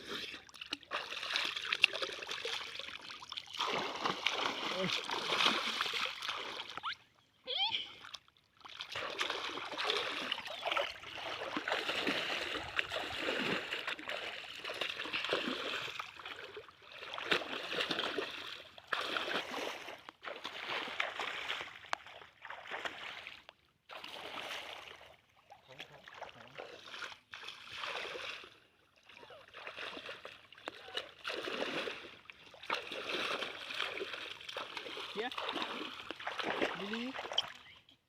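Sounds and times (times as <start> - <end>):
water splashing and trickling: 0.0 - 38.0.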